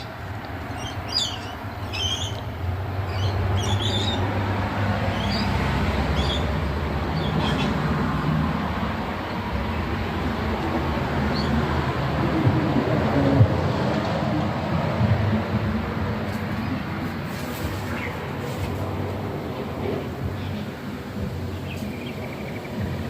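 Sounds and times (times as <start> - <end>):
bird chirping: 0.7 - 2.5, 3.1 - 4.3, 5.0 - 6.5.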